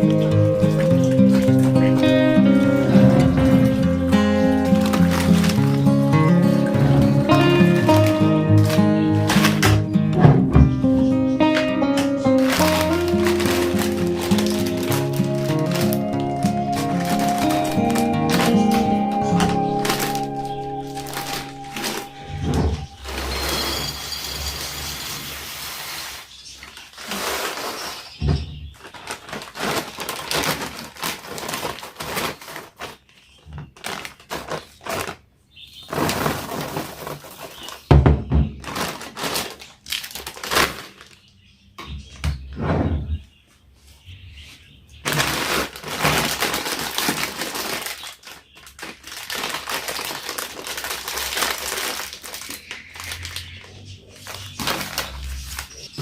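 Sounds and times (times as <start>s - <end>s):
rustling and crinkling: 0.0s - 56.0s.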